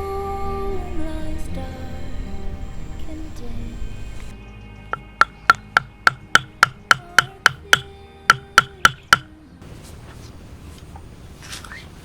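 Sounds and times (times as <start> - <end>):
music with ticking beat: 4.3 - 9.3.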